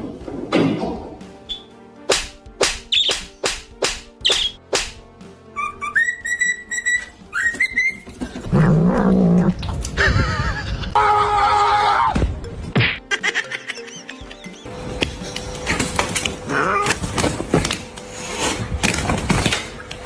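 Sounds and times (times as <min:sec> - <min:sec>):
music with whistle-like tones: 0:01.4 - 0:08.3.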